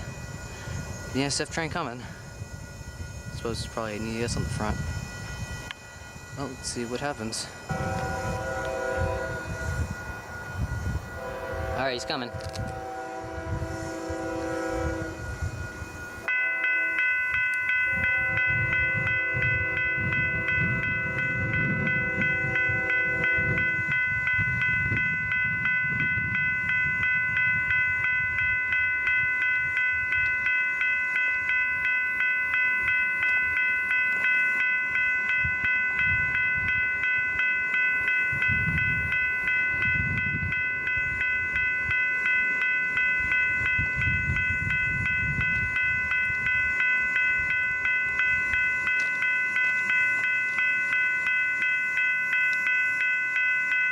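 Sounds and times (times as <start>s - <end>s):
crossing warning bell ringing: 0.0s - 53.9s
train rumble: 0.0s - 53.9s
locomotive horn: 7.7s - 9.7s, 11.2s - 15.3s.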